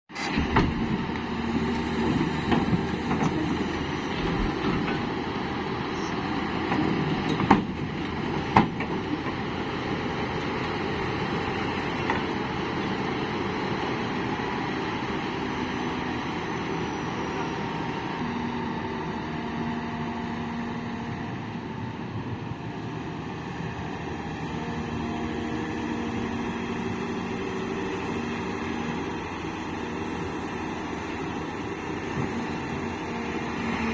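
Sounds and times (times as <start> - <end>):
excavator diesel engine running: 0.1 - 33.9.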